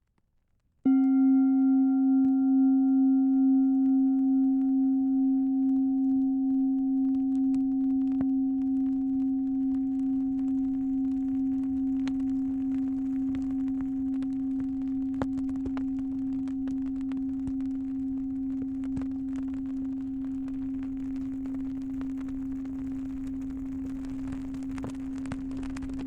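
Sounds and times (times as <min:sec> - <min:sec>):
singing bowl ringing: 0:00.8 - 0:26.0
faint campfire crackles: 0:03.9 - 0:26.0.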